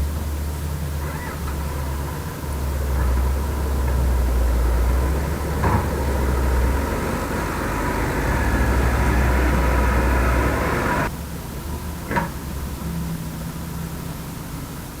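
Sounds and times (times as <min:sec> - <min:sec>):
heavy diesel engine running: 0:00.0 - 0:12.0.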